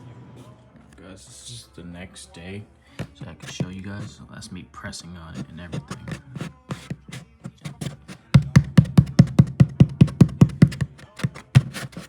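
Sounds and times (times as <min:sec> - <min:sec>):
hand tapping on speaker cone: 0:05.4 - 0:12.0.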